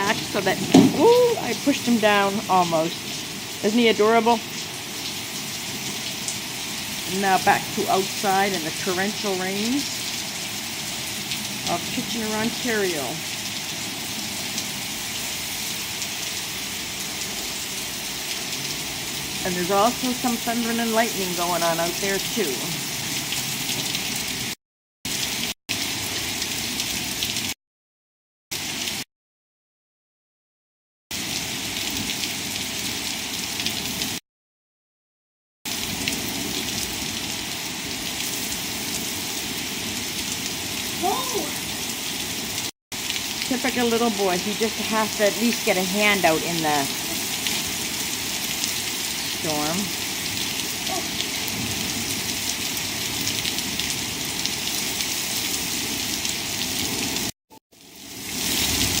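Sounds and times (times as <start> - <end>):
sharp drips and splashes: 0.0 - 24.6, 35.7 - 59.0
torrential rain pouring: 0.0 - 27.6, 28.6 - 29.0, 31.2 - 34.2, 35.7 - 59.0.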